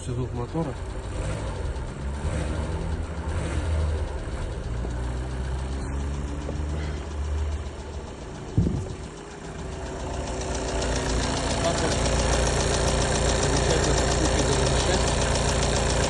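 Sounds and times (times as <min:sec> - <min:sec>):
diesel engine idling with knock: 0:00.0 - 0:16.0
brief thump: 0:08.6 - 0:09.0.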